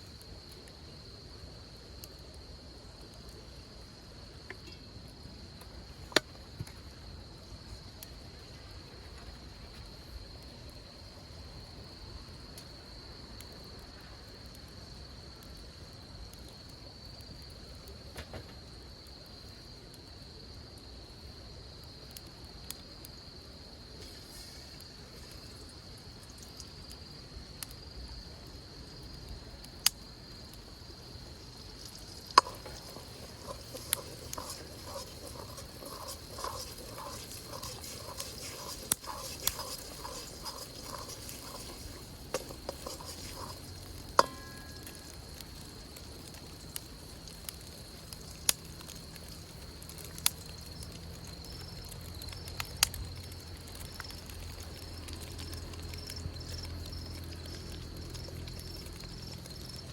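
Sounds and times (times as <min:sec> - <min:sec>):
campfire crackling and popping: 0:00.0 - 0:59.9.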